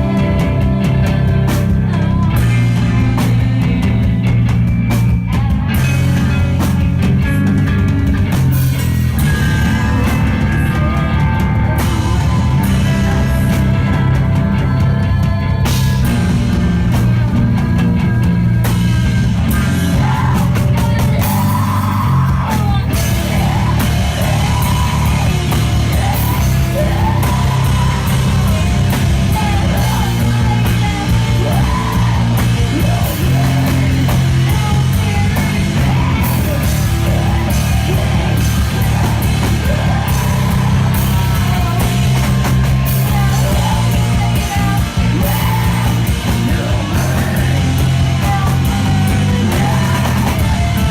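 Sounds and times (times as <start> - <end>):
rock band playing loud: 0.0 - 50.9
vocalist yelling and singing: 8.7 - 50.9.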